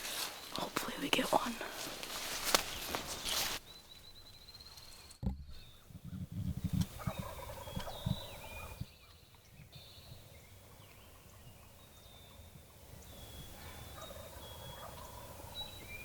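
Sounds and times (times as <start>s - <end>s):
high bird calls: 0.0s - 16.0s
low thumps: 5.2s - 8.2s
turkeys gobbling: 6.9s - 8.8s, 14.0s - 15.6s.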